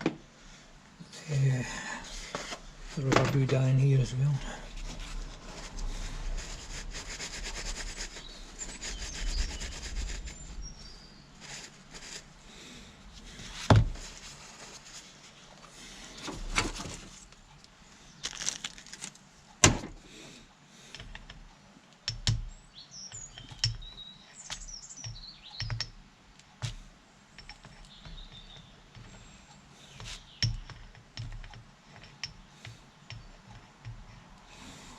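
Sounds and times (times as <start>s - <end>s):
knocks and clunks of parts: 0.0s - 0.2s, 2.3s - 3.7s, 13.2s - 14.2s, 16.1s - 17.3s, 19.6s - 20.0s, 23.1s - 26.0s, 30.0s - 34.1s
rubbing of metal parts: 2.1s - 17.3s, 27.4s - 34.9s
birds chirping faintly: 5.6s - 18.9s, 20.1s - 34.9s.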